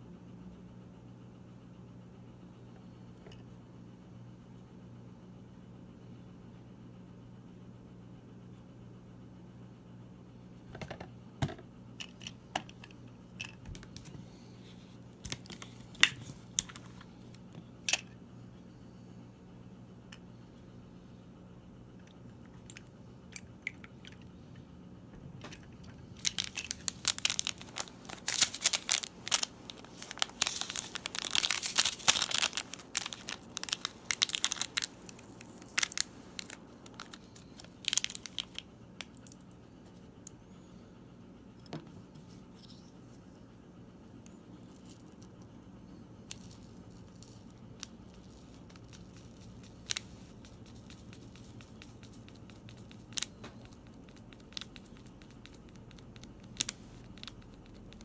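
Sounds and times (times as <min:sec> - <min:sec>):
plastic packaging crinkling and tearing: 0:15.1 - 0:17.4, 0:25.5 - 0:39.4, 0:46.3 - 0:58.0.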